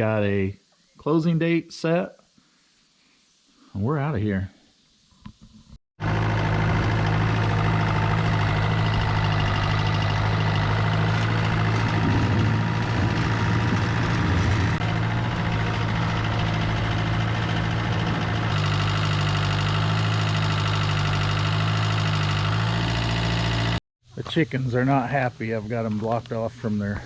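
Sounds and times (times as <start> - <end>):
tractor engine running: 6.0 - 23.8.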